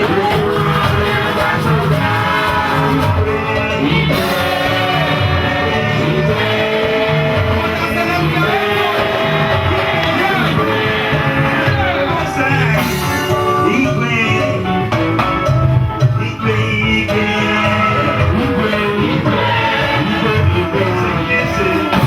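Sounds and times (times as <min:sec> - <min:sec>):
song with bass beat: 0:00.0 - 0:22.0.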